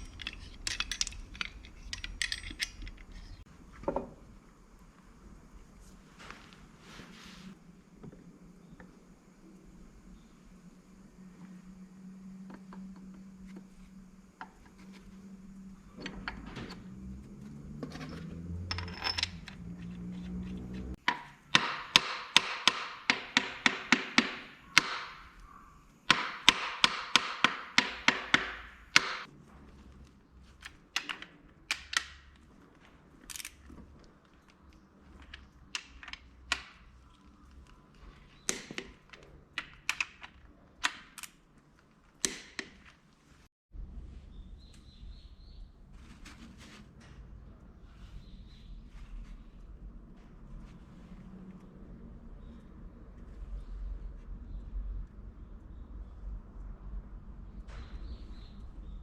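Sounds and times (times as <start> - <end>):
sharp metallic clicks: 26.1 - 29.3.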